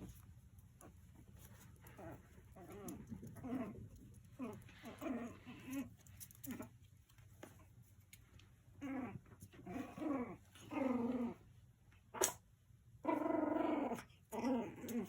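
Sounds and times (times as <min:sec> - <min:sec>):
puppy whining and growling: 0:01.9 - 0:06.7, 0:08.7 - 0:11.5, 0:13.0 - 0:15.0.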